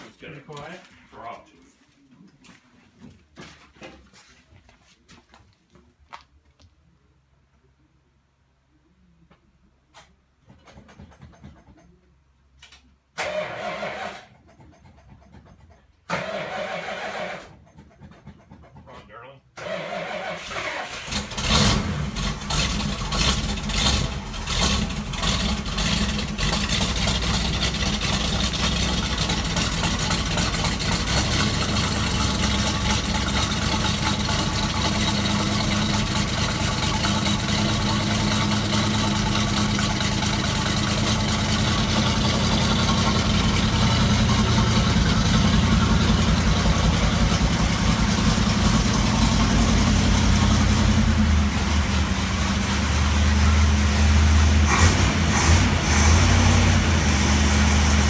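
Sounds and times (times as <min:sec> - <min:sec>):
car engine idling: 0:20.3 - 0:58.0.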